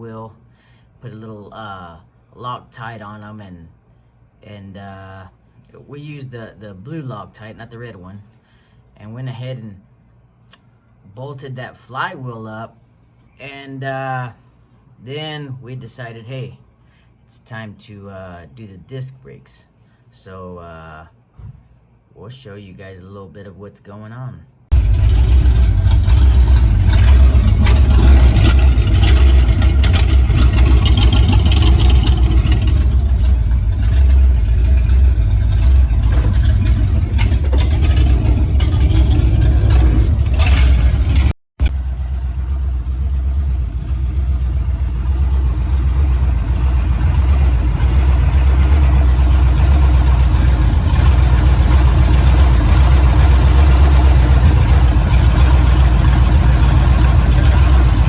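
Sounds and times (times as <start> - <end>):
car engine rumbling: 24.7 - 58.0.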